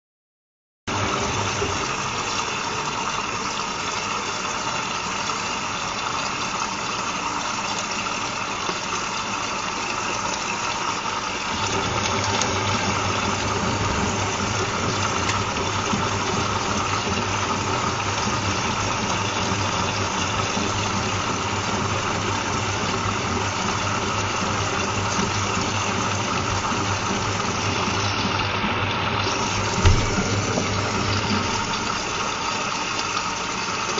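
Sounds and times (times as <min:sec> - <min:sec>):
washing machine low hum: 0:00.9 - 0:33.9
hiss of water: 0:10.9 - 0:33.9.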